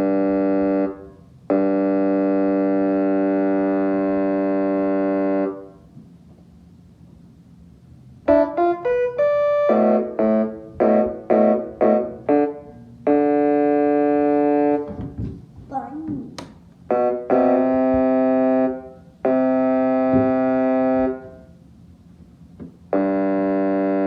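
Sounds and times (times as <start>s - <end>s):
piano chords and runs: 0.0s - 24.0s.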